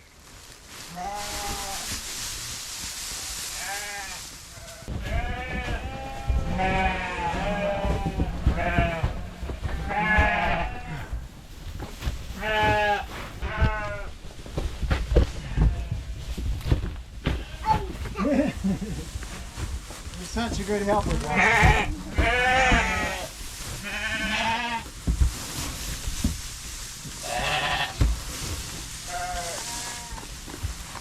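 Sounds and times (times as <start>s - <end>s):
hiss: 1.0s - 4.5s
sheep bleating: 3.6s - 11.1s, 21.2s - 24.8s.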